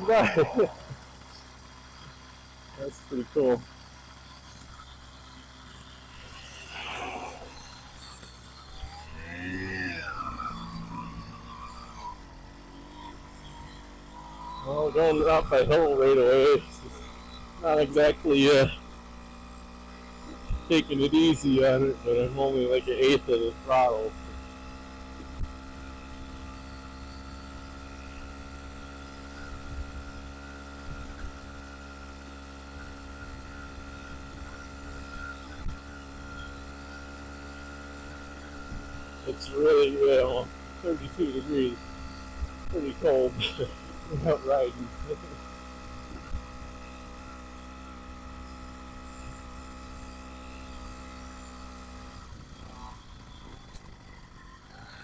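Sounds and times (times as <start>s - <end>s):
small engine running with whine: 0.0s - 55.0s.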